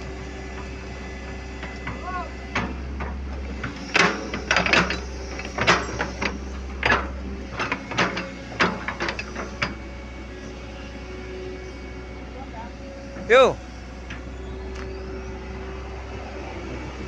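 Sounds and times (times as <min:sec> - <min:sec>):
metal clanks and knocks: 0:01.8 - 0:09.8.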